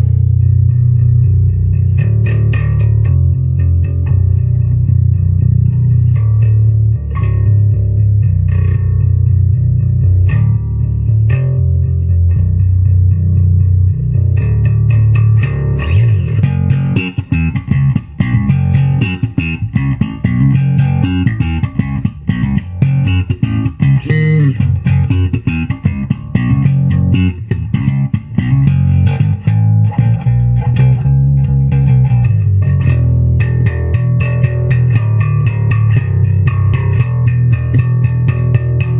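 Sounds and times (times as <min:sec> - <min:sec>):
electric bass through amp: 0:00.0 - 0:38.9.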